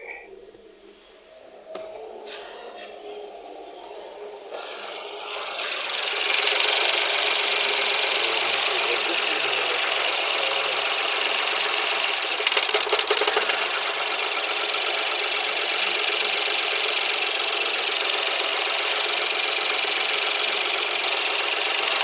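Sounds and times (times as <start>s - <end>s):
car engine running: 2.8s - 22.0s
rapid ticking: 4.5s - 22.0s.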